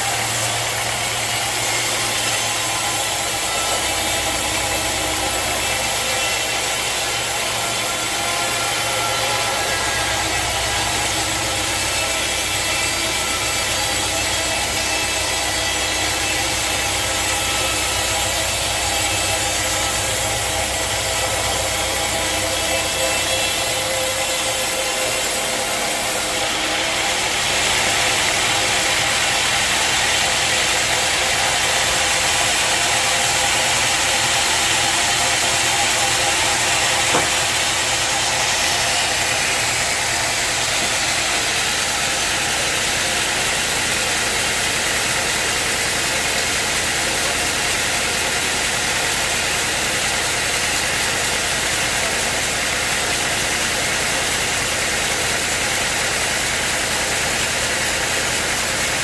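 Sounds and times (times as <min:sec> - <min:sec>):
sawmill engine running: 0:00.0 - 0:59.0.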